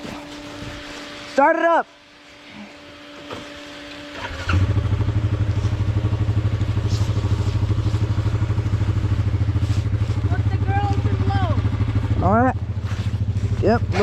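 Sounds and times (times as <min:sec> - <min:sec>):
engine starting: 0:04.1 - 0:05.0
engine idling with low thumping: 0:04.2 - 0:14.0.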